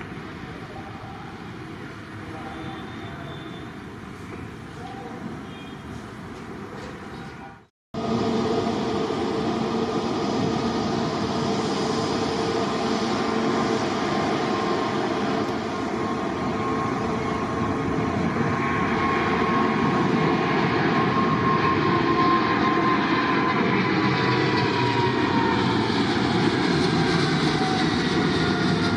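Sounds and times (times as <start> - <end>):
jet engines roaring: 0.0 - 7.4, 8.0 - 28.9
engine whine: 8.0 - 28.9.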